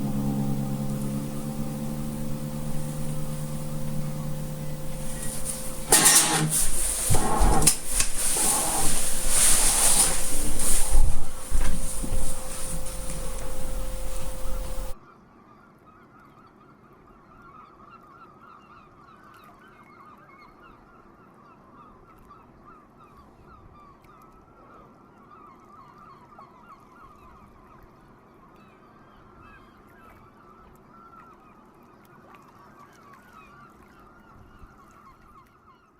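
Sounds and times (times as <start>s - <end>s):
loud steady tone: 0.0s - 15.0s.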